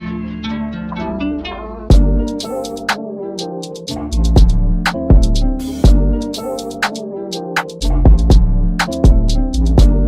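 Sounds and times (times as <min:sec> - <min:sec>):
bass and kick drum: 0:01.9 - 0:02.3, 0:04.2 - 0:06.3, 0:07.8 - 0:10.0
drum-machine beat with hi-hats: 0:01.9 - 0:10.0.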